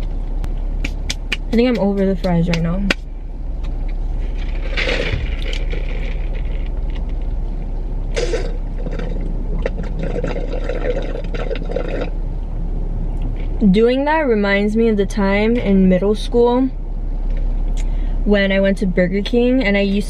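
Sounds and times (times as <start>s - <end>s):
slurping drink through straw: 8.2s - 12.1s.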